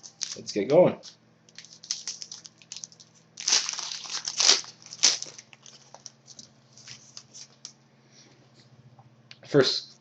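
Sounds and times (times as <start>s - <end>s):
card pack wrapper tearing: 0.0s - 7.5s.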